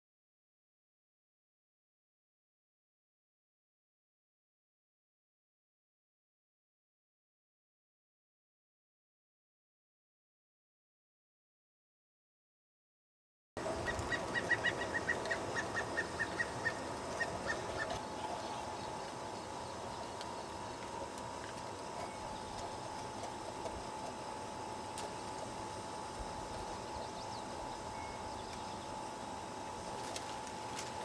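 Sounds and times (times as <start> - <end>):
faint constant hum: 13.6 - 31.0.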